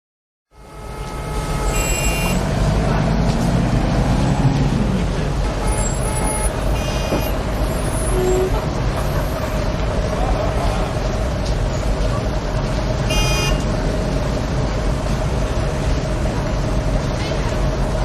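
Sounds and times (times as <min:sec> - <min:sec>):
heavy traffic rumble: 0:00.5 - 0:18.0
engine note rising and falling: 0:01.0 - 0:05.6.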